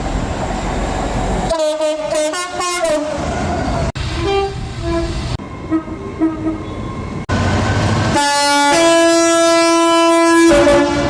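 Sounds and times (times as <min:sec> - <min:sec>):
train rumbling: 0:00.0 - 0:11.0
train horn blasts: 0:01.5 - 0:03.2, 0:04.2 - 0:07.0, 0:08.1 - 0:11.0.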